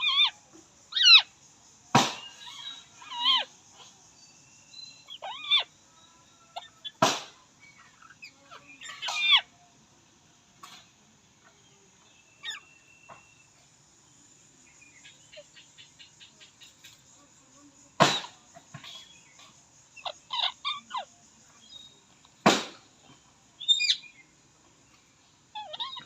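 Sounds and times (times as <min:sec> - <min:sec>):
parakeet whistles and screeches: 0:00.0 - 0:01.2, 0:02.2 - 0:03.5, 0:04.9 - 0:05.7, 0:07.7 - 0:09.5, 0:12.4 - 0:13.2, 0:20.0 - 0:21.1, 0:25.6 - 0:26.0
parakeet harsh squawk: 0:02.3 - 0:03.5, 0:05.1 - 0:05.7, 0:07.9 - 0:09.5, 0:20.0 - 0:21.1, 0:25.6 - 0:26.0.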